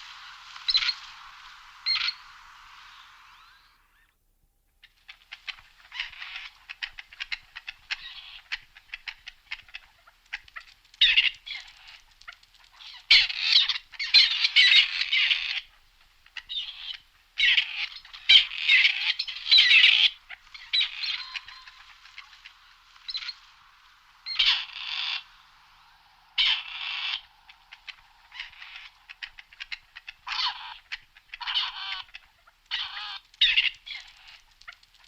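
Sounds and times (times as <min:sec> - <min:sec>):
partridges calling: 0:00.0 - 0:04.1, 0:04.8 - 0:35.0.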